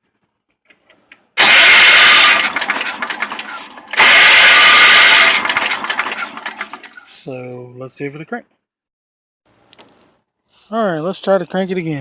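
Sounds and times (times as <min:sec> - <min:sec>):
electric starter cranking engine: 0:01.4 - 0:07.1.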